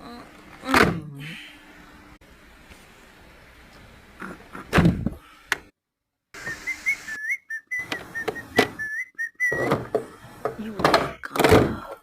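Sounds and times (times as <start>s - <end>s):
whistled notes bending: 6.4s - 10.0s.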